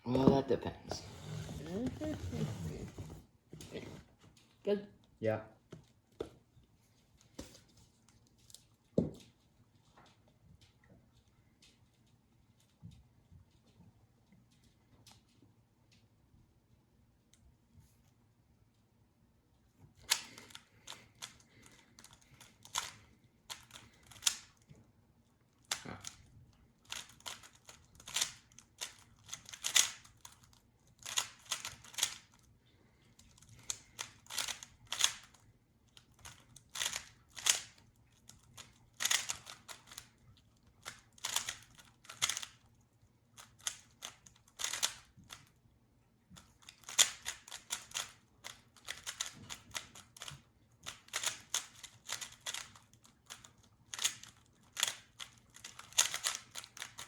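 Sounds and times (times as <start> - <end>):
puzzle cube turning clicks: 20.0 - 24.7, 25.6 - 32.5, 33.2 - 42.7, 43.4 - 45.5, 46.4 - 57.0.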